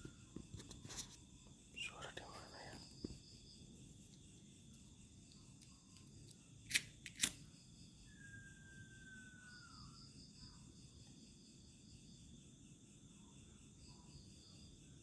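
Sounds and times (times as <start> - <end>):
crickets chirring: 0.0 - 15.0
sharp clicks: 6.7 - 7.4
faint thin whistle: 7.9 - 10.1.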